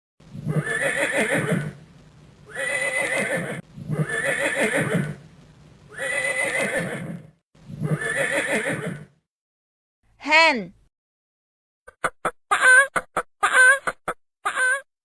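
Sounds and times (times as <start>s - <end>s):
horse neighing: 0.4s - 1.8s, 2.5s - 5.2s, 5.9s - 9.2s.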